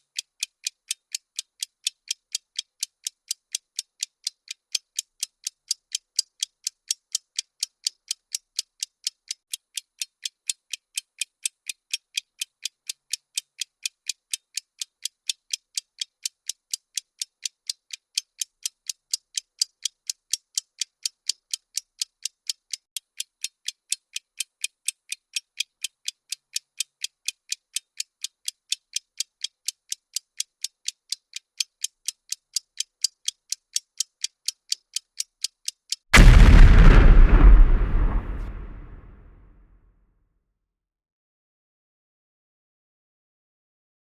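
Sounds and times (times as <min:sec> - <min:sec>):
bomb timer ticking: 0:23.4 - 0:39.1
explosion with deep rumble: 0:36.2 - 0:39.3.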